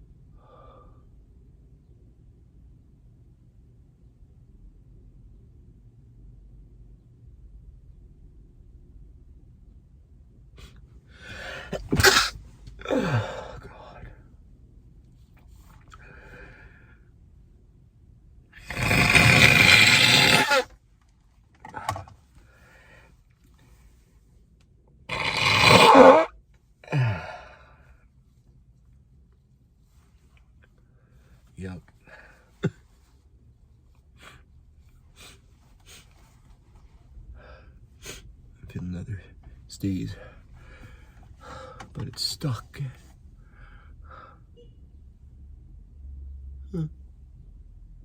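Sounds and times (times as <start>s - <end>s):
sniffs through blocked nose: 10.6s - 12.4s, 18.7s - 20.6s, 35.2s - 36.3s
nose blowing: 11.4s - 13.3s, 18.6s - 20.7s, 25.1s - 26.3s
man's sharp vocal burst: 11.4s - 13.4s, 18.6s - 20.7s, 25.1s - 26.3s.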